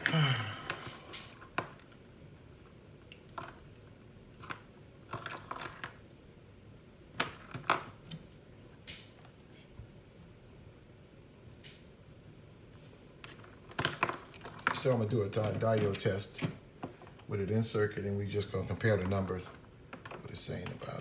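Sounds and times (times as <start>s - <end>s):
small objects clicking and knocking: 4.4s - 6.2s.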